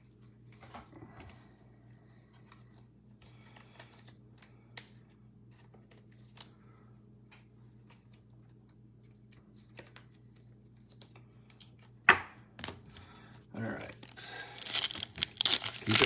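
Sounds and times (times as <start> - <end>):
trading cards rustling: 13.8 - 16.0.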